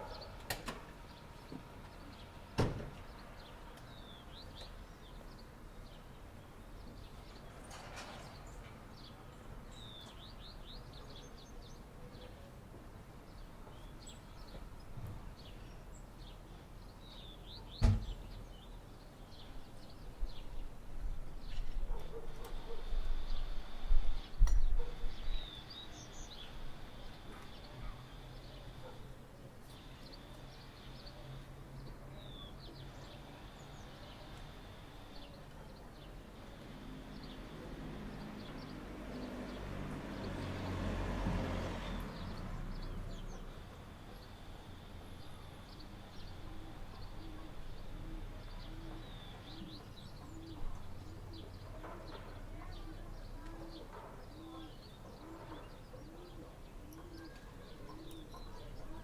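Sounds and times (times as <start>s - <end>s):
small birds chirping: 0.0s - 59.0s
dove cooing: 46.3s - 51.8s, 52.6s - 59.0s.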